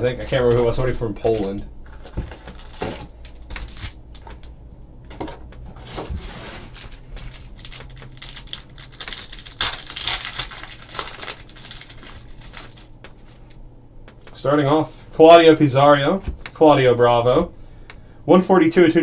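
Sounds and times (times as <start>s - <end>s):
cardboard handling: 0.2s - 4.5s, 5.1s - 13.6s
plastic wrapping tearing and crinkling: 0.2s - 4.6s, 5.8s - 13.6s.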